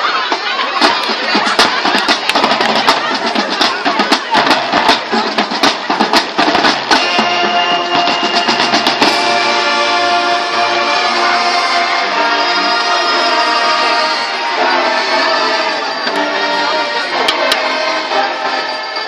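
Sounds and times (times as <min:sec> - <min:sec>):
drumline cadence: 0:00.0 - 0:19.0
horns playing held chords: 0:06.9 - 0:19.0.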